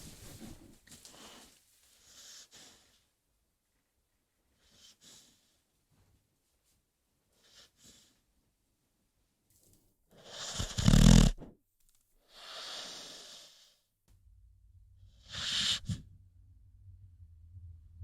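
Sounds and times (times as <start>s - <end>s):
dog snoring: 10.2s - 11.5s, 15.1s - 16.1s
dog breathy exhale: 12.3s - 13.8s, 15.2s - 16.0s.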